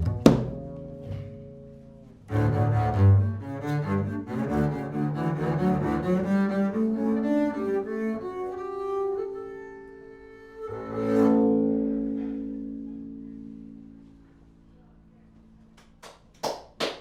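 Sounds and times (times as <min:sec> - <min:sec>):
upright bass notes: 0:00.0 - 0:05.1.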